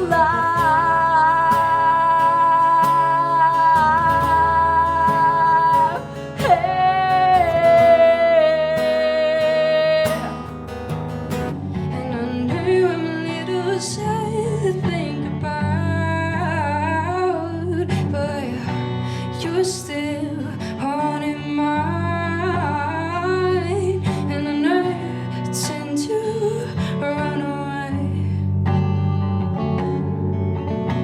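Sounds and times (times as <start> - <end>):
person singing: 0.0 - 10.5
strummed acoustic guitar: 0.0 - 31.0.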